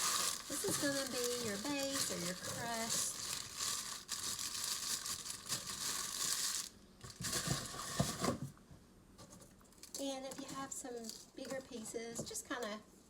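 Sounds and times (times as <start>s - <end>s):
crackers crumbling: 0.0s - 8.2s
plastic wrapper crinkling: 0.0s - 8.2s.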